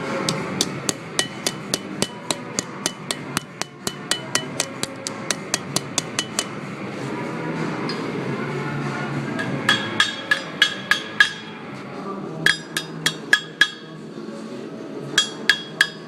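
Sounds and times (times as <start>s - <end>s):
hammer striking iron on anvil: 0.2s - 6.6s, 9.4s - 11.6s, 12.5s - 14.0s, 15.2s - 16.0s.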